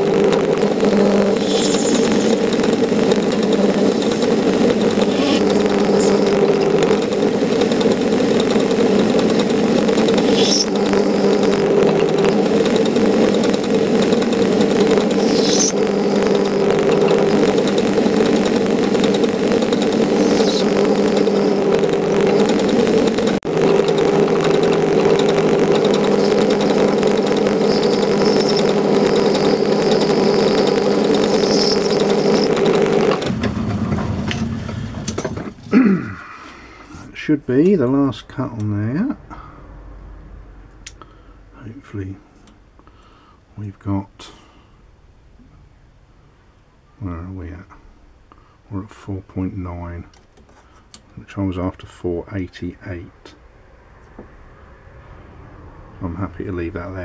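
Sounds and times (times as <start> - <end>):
metal lathe humming: 0.0 - 33.4.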